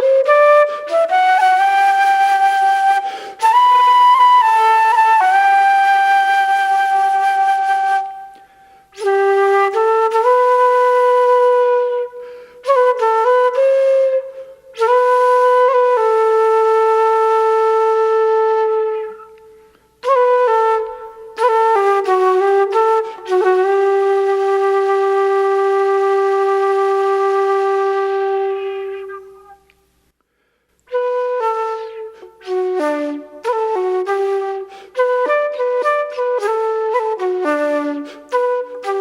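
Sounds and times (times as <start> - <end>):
solo flute playing slow tune: 0.0 - 29.8, 30.9 - 39.0.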